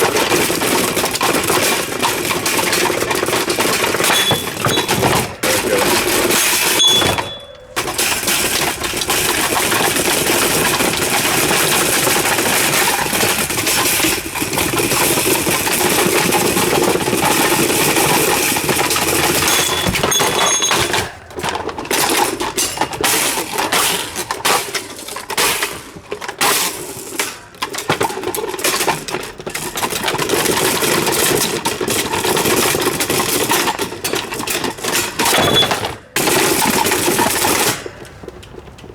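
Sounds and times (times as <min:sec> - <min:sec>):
fan being smashed apart: 0:00.0 - 0:29.1.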